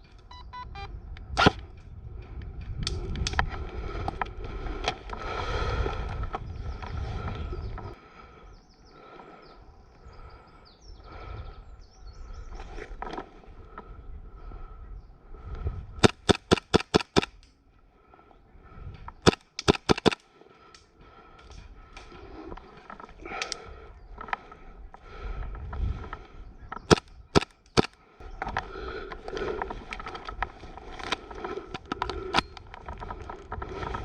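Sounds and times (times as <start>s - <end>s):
airsoft rifle shots: 16.0s - 17.4s, 19.2s - 20.2s, 26.9s - 28.0s.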